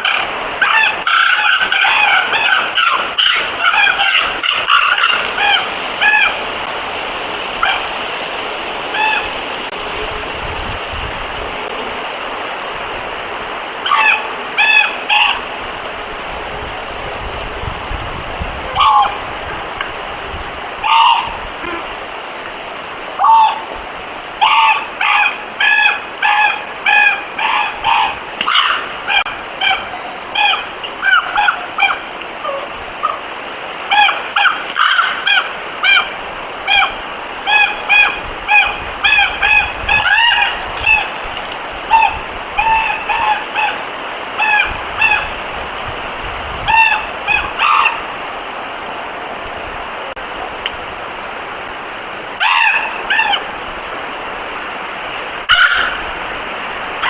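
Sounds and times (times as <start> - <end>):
geese honking: 0.0 - 6.7, 7.4 - 8.0, 8.6 - 10.3, 13.4 - 16.3, 18.6 - 22.0, 23.2 - 23.8, 24.4 - 45.4, 46.6 - 48.2, 52.4 - 53.5, 55.5 - 56.1
steady background hiss: 0.0 - 57.0.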